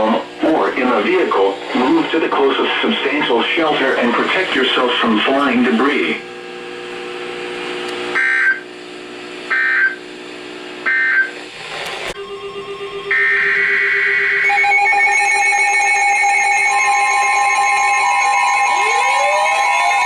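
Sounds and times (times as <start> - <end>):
steady alarm tones together: 0.0 - 8.7, 12.2 - 20.0
emergency alert data bursts: 8.1 - 8.7, 12.2 - 20.0.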